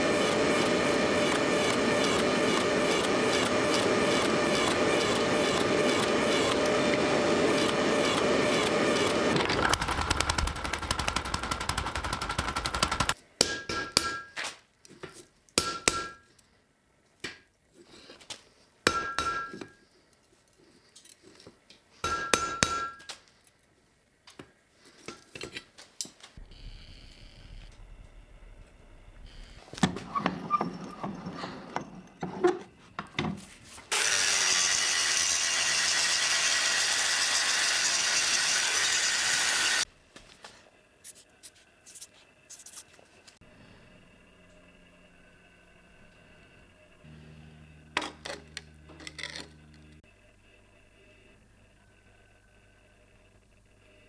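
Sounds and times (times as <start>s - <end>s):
hammer striking metal: 13.4s - 14.4s, 15.6s - 16.2s, 22.0s - 23.0s
steady dense machine noise: 26.4s - 29.7s, 43.4s - 54.0s.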